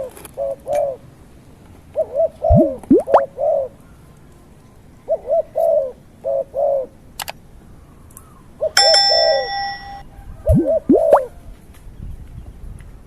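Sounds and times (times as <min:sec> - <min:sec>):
pigeon cooing: 0:02.0 - 0:03.8, 0:05.1 - 0:07.0, 0:10.5 - 0:11.4
bright ringing tone: 0:08.8 - 0:10.1.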